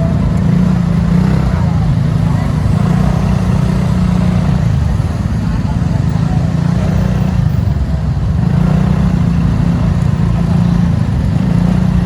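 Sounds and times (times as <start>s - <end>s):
vehicle engines humming in traffic: 0.0s - 12.0s.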